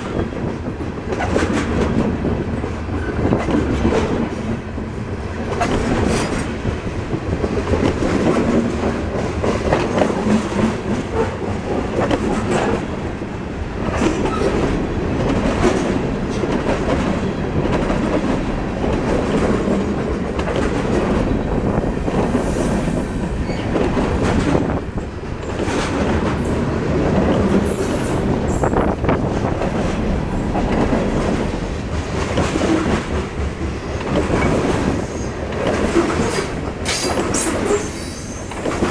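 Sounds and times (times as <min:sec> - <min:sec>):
train wheels clacking over rail joints: 0:00.0 - 0:04.6, 0:05.3 - 0:13.0, 0:13.8 - 0:38.9
faint high wheel squeal: 0:27.6 - 0:28.3, 0:37.0 - 0:38.9.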